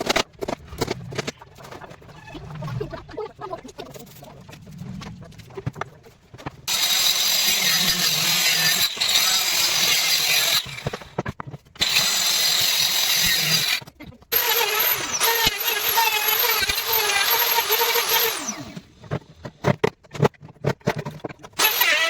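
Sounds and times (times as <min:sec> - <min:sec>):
power tool cutting wood: 0:06.7 - 0:11.2, 0:11.8 - 0:18.9, 0:21.6 - 0:22.0.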